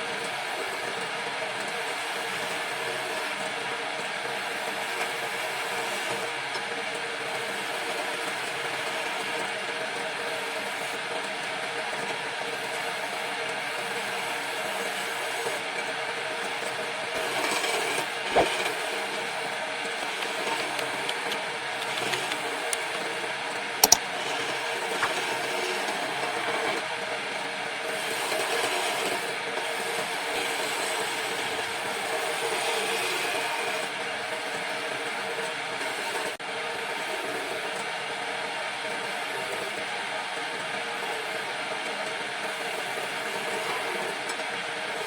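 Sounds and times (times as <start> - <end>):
wood lathe running: 0.4 - 9.4, 12.5 - 26.8, 27.9 - 34.0.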